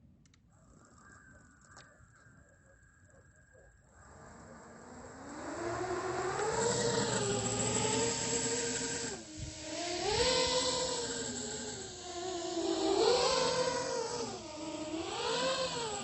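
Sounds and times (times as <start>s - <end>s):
drone motors whining: 3.9s - 16.0s.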